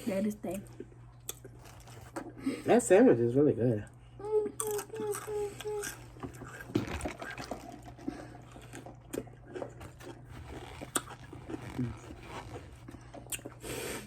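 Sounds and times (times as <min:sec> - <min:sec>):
steady low hum: 0:00.0 - 0:14.0
chewing: 0:00.7 - 0:02.4, 0:04.6 - 0:14.0
wet mouth clicks and smacks: 0:13.2 - 0:13.6.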